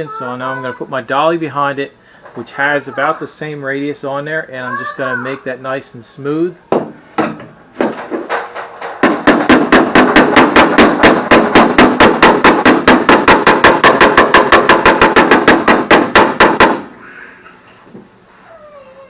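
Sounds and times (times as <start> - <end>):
hammer striking sheet steel: 6.8 - 16.9.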